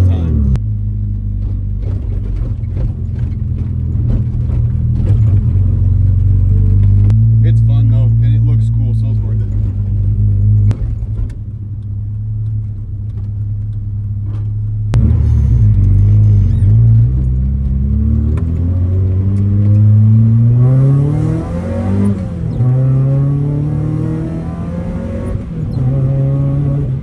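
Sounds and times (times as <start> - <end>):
car engine revving: 0.0 - 27.0.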